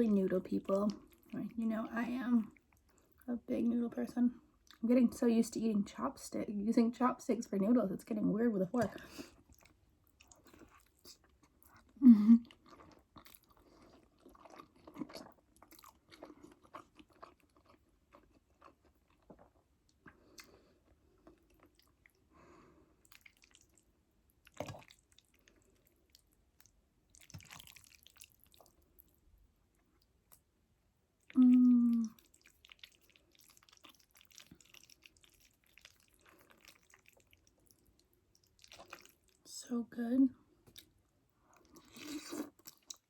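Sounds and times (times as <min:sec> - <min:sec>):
wet chewing: 0:09.3 - 0:22.3, 0:23.0 - 0:30.4, 0:31.2 - 0:39.5, 0:40.6 - 0:43.0.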